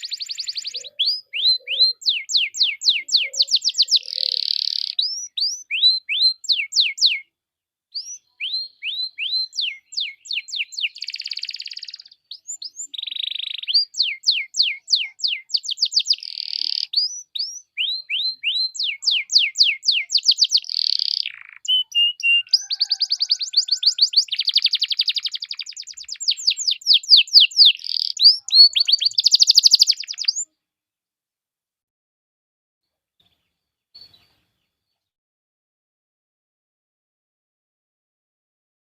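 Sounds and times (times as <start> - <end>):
canary singing: 0.0 - 7.3, 7.9 - 30.5.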